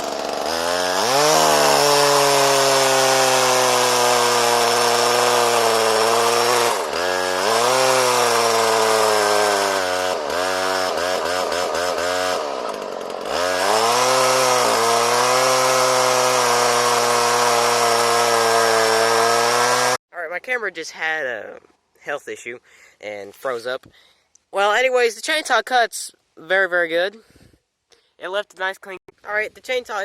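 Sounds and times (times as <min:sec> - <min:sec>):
chainsaw cutting wood: 0:00.0 - 0:20.0.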